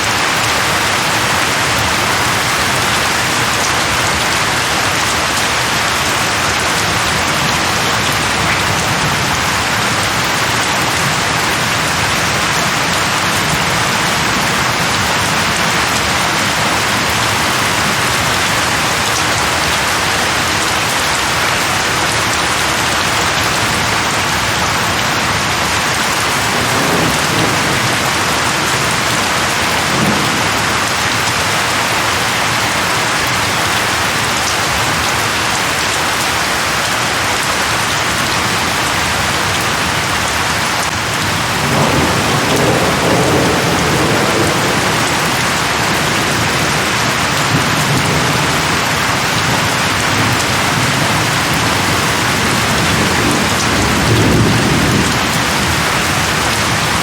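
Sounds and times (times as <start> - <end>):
heavy rain on leaves: 0.0 - 57.0
low rumbles of thunder: 26.4 - 31.1, 41.4 - 56.9.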